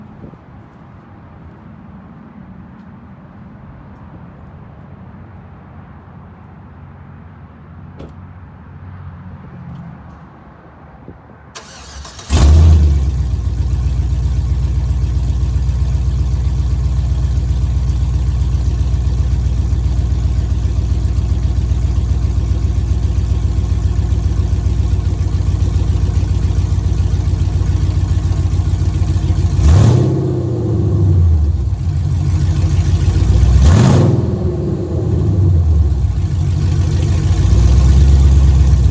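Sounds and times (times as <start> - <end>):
engine revving: 11.6 - 38.9
loud vee eight engine idling: 12.3 - 38.9.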